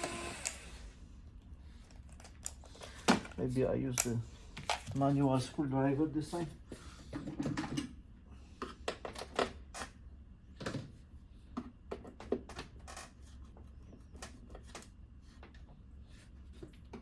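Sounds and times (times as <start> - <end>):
parts being handled: 1.7 - 5.4.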